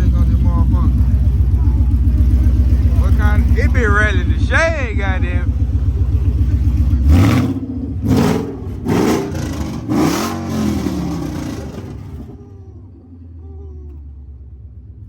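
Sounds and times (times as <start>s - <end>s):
car engine revving and idling: 0.0s - 15.0s.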